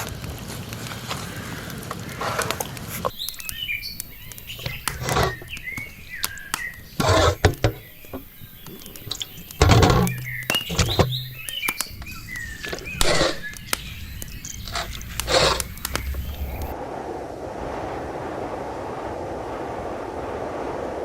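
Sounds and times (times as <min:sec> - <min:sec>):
small birds chirping: 0:00.6 - 0:16.8.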